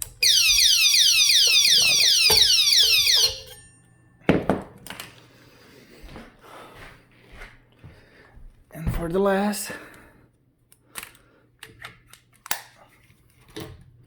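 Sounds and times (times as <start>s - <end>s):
scooter alarm chirps: 0.2s - 3.6s.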